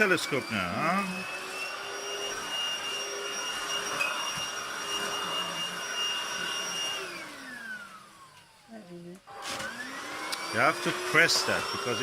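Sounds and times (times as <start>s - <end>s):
vacuum motor whine: 0.0s - 12.0s.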